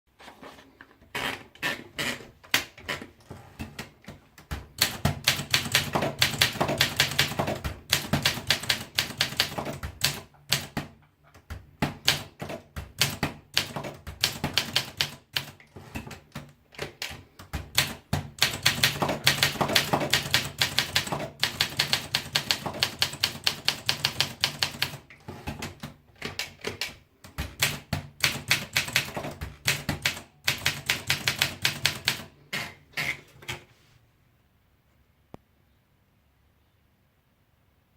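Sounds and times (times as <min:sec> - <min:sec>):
typewriter keystroke clicks: 0:03.6 - 0:32.7.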